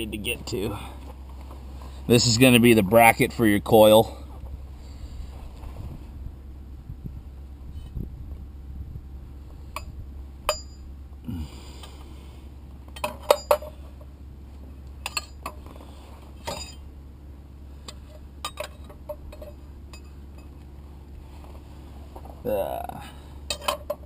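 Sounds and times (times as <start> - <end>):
steady low hum: 0.0 - 24.0
metal tools clinking: 12.9 - 14.1, 15.0 - 15.8, 16.4 - 16.9, 17.9 - 20.6, 23.5 - 24.0.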